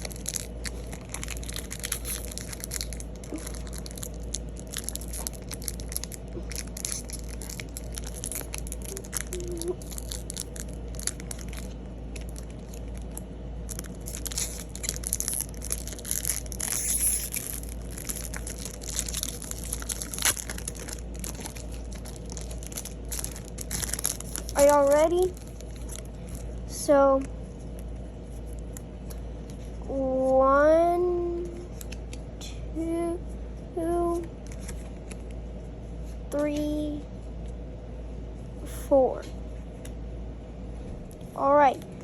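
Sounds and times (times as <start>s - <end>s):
foil wrapper crinkling and tearing: 0.0s - 26.7s.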